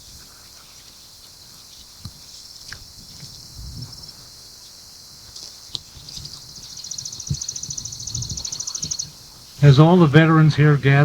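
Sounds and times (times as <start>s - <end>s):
bird high rapid trill: 6.5s - 11.0s.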